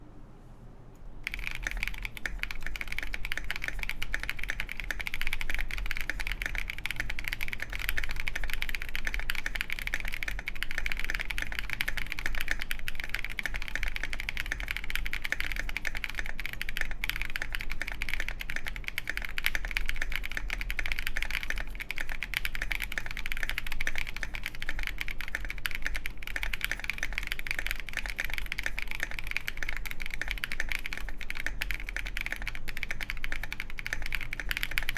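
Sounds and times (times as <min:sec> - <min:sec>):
faint low hum: 0:00.0 - 0:34.9
fast typing on mechanical keyboard: 0:01.2 - 0:34.9.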